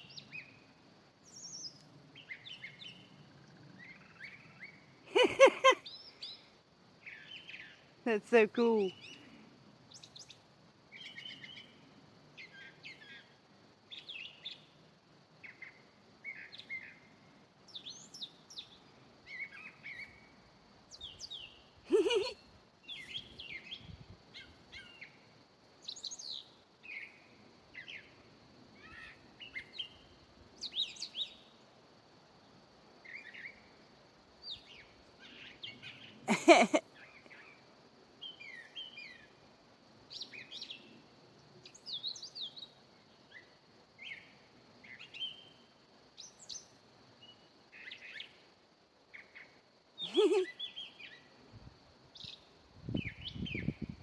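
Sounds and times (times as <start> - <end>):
songbird chirping: 0.0 - 31.8, 32.5 - 48.5, 49.1 - 51.5, 52.1 - 54.0
faint high hum: 2.9 - 7.2.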